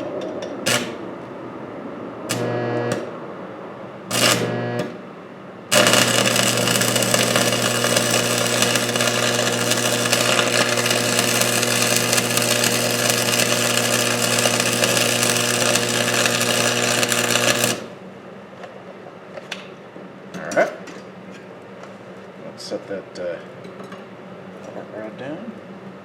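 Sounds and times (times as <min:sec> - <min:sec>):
welding arc crackling: 0:00.6 - 0:01.0, 0:02.3 - 0:03.1, 0:04.1 - 0:05.1, 0:05.7 - 0:18.0
welding machine hum: 0:00.6 - 0:01.1, 0:02.3 - 0:03.2, 0:04.1 - 0:05.1, 0:05.7 - 0:18.1.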